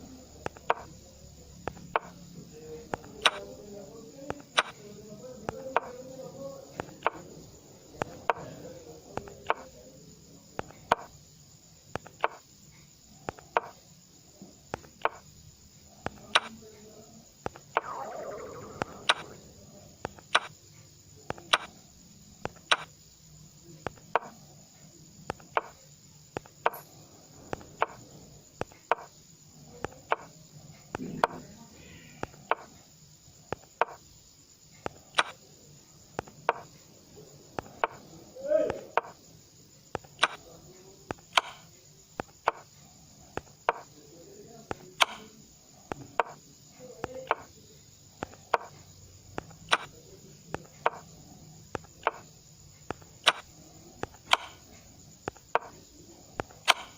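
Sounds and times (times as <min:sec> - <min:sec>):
chess pieces clicking on board: 0:00.4 - 0:00.9, 0:01.6 - 0:02.2, 0:02.9 - 0:03.5, 0:04.3 - 0:04.8, 0:05.5 - 0:06.0, 0:06.8 - 0:07.3, 0:08.0 - 0:08.6, 0:09.2 - 0:09.7, 0:10.6 - 0:11.2, 0:11.9 - 0:12.4, 0:13.3 - 0:13.8, 0:14.7 - 0:15.3, 0:16.0 - 0:16.6, 0:17.4 - 0:19.4, 0:20.0 - 0:20.6, 0:21.2 - 0:21.8, 0:22.4 - 0:22.9, 0:23.9 - 0:24.4, 0:25.2 - 0:26.9, 0:27.5 - 0:28.0, 0:28.6 - 0:29.1, 0:29.8 - 0:30.3, 0:32.2 - 0:32.8, 0:33.5 - 0:34.0, 0:34.8 - 0:35.4, 0:36.2 - 0:36.8, 0:37.6 - 0:38.0, 0:38.7 - 0:39.2, 0:39.9 - 0:40.5, 0:41.1 - 0:42.7, 0:43.3 - 0:43.9, 0:44.7 - 0:45.3, 0:45.9 - 0:46.4, 0:47.0 - 0:47.5, 0:48.2 - 0:51.1, 0:51.8 - 0:52.3, 0:52.9 - 0:55.8, 0:56.4 - 0:56.9.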